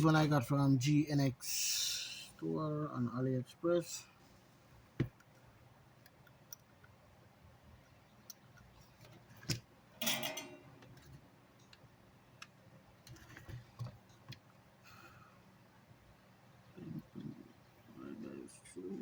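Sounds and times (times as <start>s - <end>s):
tools clattering: 10.0s - 11.2s.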